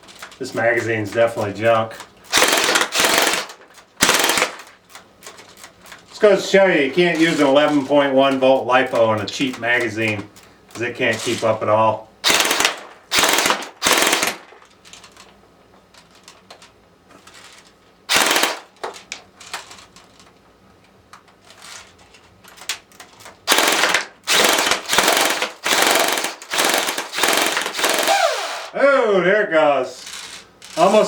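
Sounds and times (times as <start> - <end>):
airsoft gun firing full-auto: 2.3 - 4.7, 12.2 - 14.5, 18.1 - 18.7, 23.4 - 28.7.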